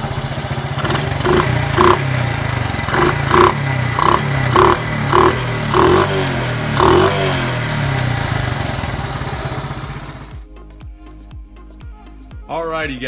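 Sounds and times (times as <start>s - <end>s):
small engine running: 0.0s - 10.4s.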